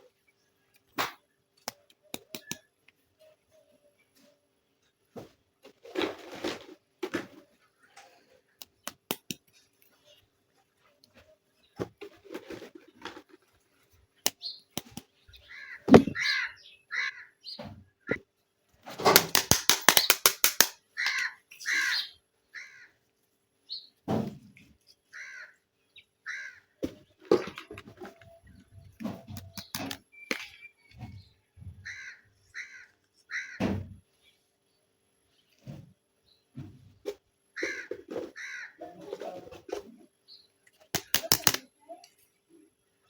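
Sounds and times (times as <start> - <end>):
plastic toy pieces clicking: 19.1 - 21.2, 40.9 - 41.6.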